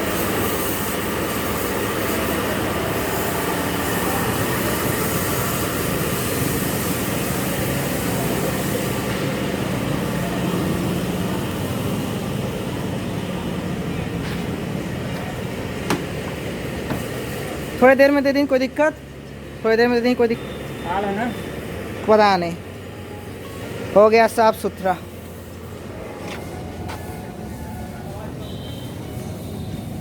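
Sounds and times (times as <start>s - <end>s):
hissing jet spray: 0.0s - 13.0s
machinery humming: 0.0s - 30.0s.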